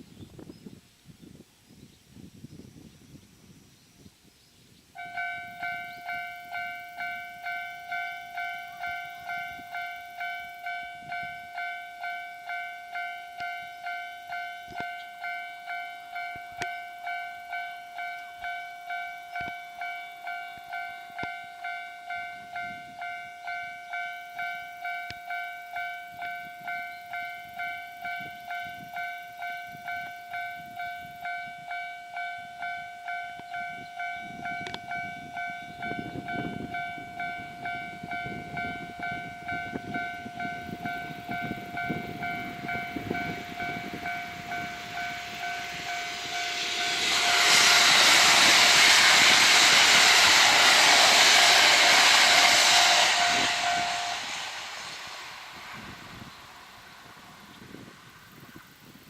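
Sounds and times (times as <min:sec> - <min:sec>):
level-crossing warning bell ringing: 0:05.0 - 0:58.0
low rumble: 0:42.8 - 0:58.1.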